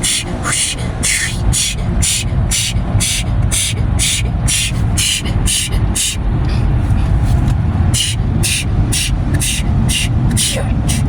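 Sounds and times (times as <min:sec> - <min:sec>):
low rumble of wash machinery: 0:00.0 - 0:11.0
water spray hissing against car: 0:08.0 - 0:11.0.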